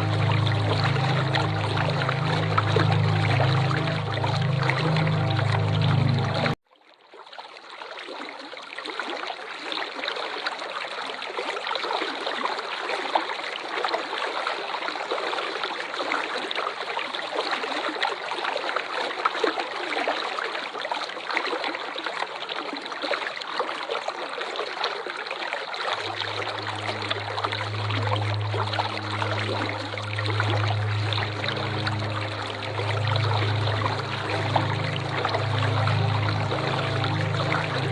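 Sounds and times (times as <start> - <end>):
waterfall rushing: 0.0 - 6.5, 26.0 - 37.9
low steady hum: 0.0 - 6.6, 26.0 - 37.9.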